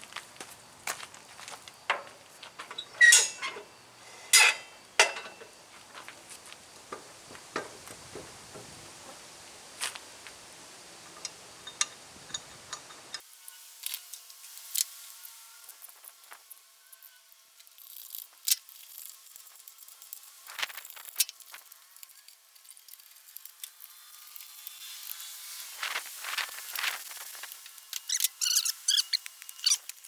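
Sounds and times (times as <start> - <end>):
background hiss: 0.0 - 30.0
metal tools clanking: 1.9 - 5.6, 11.0 - 13.2
loud metallic clanks with ring: 2.9 - 3.7, 4.3 - 5.5.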